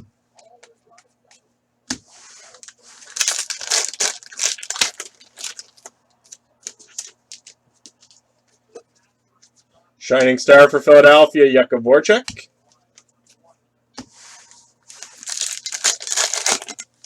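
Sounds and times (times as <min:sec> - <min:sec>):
foil wrapper tearing and crinkling: 0:03.0 - 0:05.9, 0:15.0 - 0:16.8.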